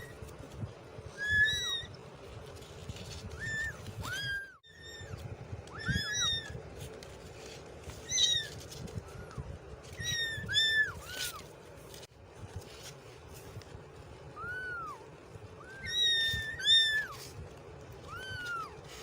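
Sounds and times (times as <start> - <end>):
kittens mewing: 3.1 - 7.0, 7.9 - 11.6, 14.3 - 19.0.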